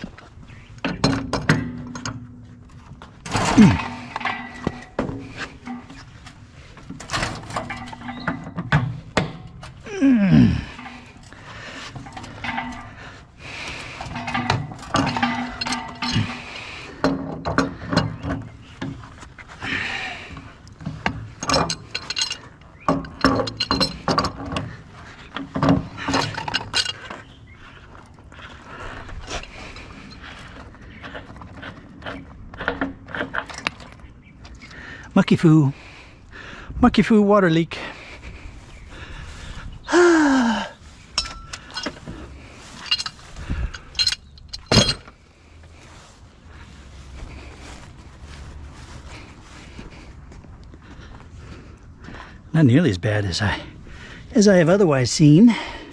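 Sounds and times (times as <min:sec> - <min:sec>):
metal clanks from hand tools: 0:00.8 - 0:09.8, 0:10.6 - 0:19.1, 0:20.3 - 0:27.3, 0:41.1 - 0:45.2
man groaning: 0:09.8 - 0:10.8, 0:39.9 - 0:40.7.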